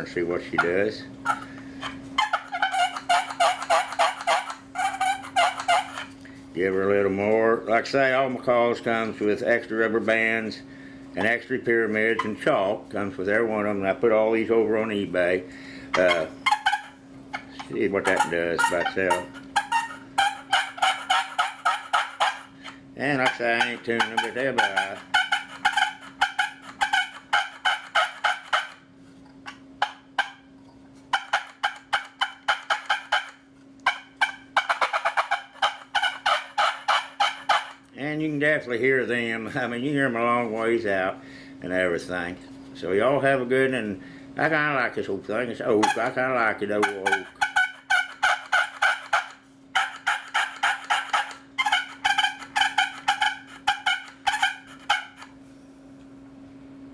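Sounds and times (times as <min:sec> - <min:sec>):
turkey call clucks and purrs: 0:00.6 - 0:06.2, 0:15.9 - 0:28.8, 0:29.4 - 0:30.5, 0:31.1 - 0:37.8, 0:46.8 - 0:55.4.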